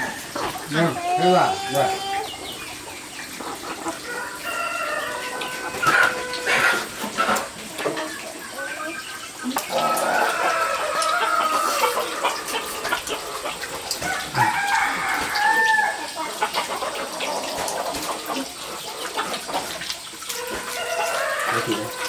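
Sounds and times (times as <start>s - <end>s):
rooster crowing: 0.0s - 2.1s, 4.0s - 7.0s, 9.7s - 13.4s, 14.0s - 16.2s, 20.4s - 22.0s.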